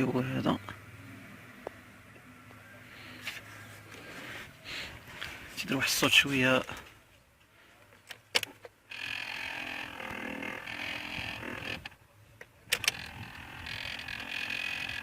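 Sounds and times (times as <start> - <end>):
blower motor whirring roughly: 8.9 - 12.0, 12.8 - 15.0.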